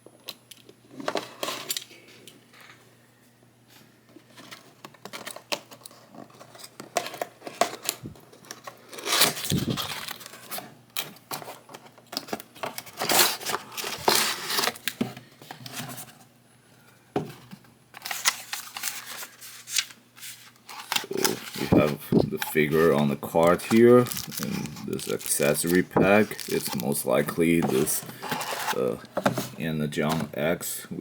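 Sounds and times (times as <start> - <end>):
rustling crinkling and tearing: 18.0 - 30.2
box being opened by hand: 20.7 - 30.4.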